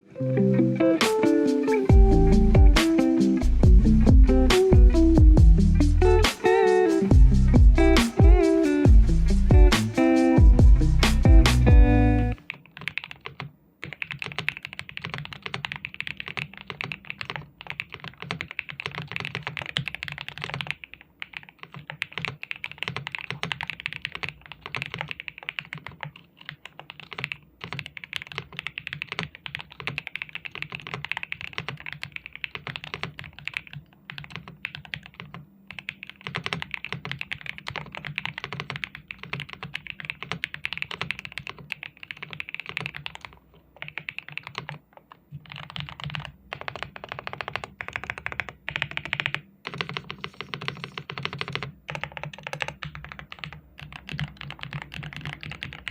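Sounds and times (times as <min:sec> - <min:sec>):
mechanical keyboard typing: 0:12.2 - 0:55.9.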